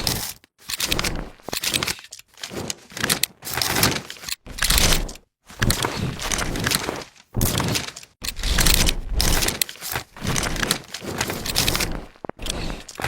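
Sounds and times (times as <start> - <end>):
crackling crunching noises: 0.0 - 13.0.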